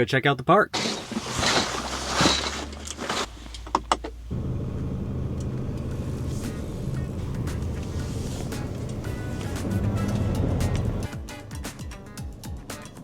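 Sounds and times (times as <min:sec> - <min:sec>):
sharp clicks and handling noises: 0:00.8 - 0:04.3
van engine running: 0:00.8 - 0:11.2.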